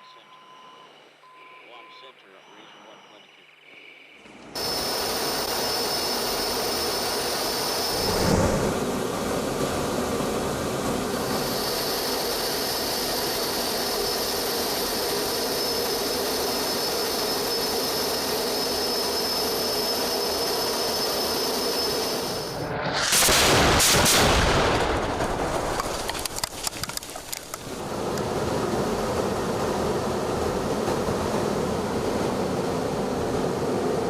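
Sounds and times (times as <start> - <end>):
jet engines roaring with whine: 1.8 - 34.0
low rumble: 7.8 - 11.5.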